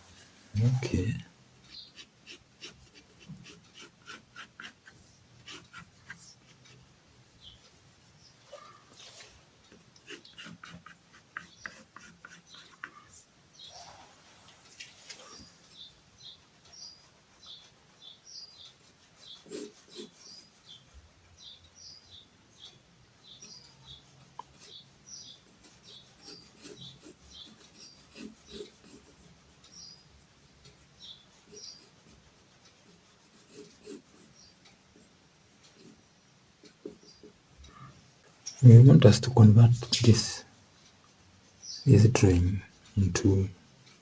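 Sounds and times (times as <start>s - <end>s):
pen scratching on paper: 1.7s - 6.8s, 10.0s - 13.3s, 18.8s - 20.9s, 25.5s - 30.0s, 31.0s - 34.4s
squeaky pen strokes: 1.7s - 6.8s, 10.0s - 14.0s, 18.6s - 21.0s, 23.4s - 30.0s.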